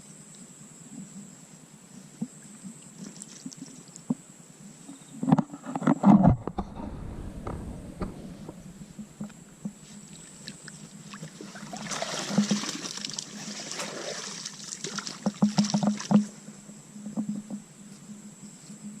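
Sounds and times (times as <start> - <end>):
water splashing and sloshing: 6.2 - 17.6.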